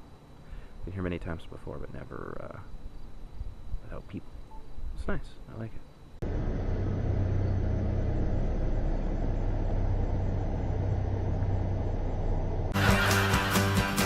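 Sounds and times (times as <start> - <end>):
car driving rumble: 6.2 - 12.8.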